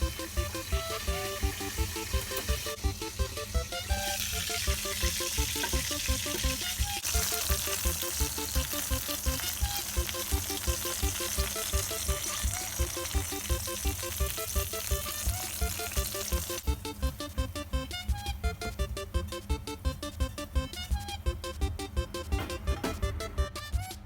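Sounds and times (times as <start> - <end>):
bacon and eggs sizzling in a pan: 0.0 - 16.7
background music with a beat: 0.0 - 24.0.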